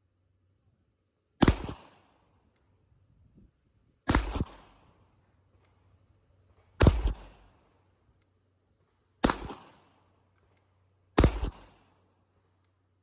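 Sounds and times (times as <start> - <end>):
handgun shots: 9.2 - 9.8.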